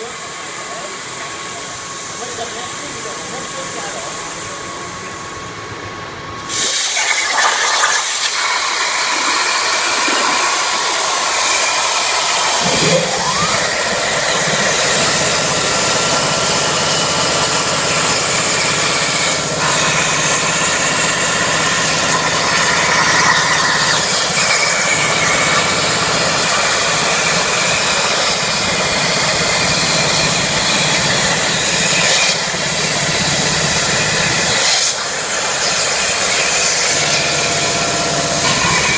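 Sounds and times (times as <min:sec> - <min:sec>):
plasma torch hissing: 0:06.4 - 0:25.6.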